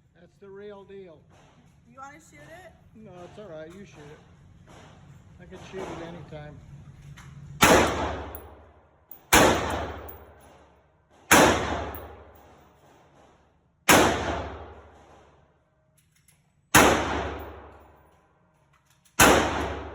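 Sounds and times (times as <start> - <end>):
rifle shots: 7.6 - 8.5, 9.3 - 10.6, 11.3 - 12.5, 13.9 - 15.4, 16.7 - 18.0, 19.2 - 19.9.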